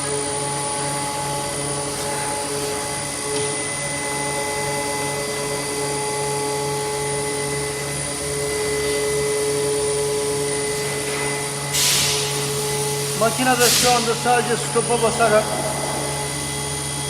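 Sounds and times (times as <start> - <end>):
sealing machine humming: 1.4 - 17.0
air hiss: 10.8 - 15.1.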